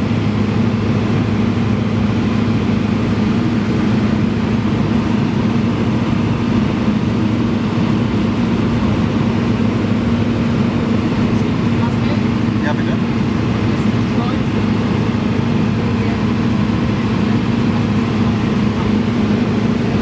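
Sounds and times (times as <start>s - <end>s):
light aircraft engine droning: 0.0s - 20.0s.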